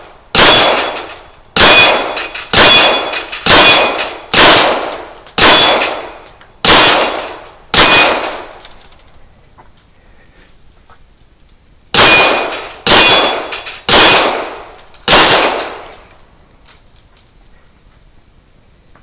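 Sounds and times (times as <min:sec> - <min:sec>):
pistol shots: 0:00.0 - 0:08.6, 0:11.9 - 0:16.0.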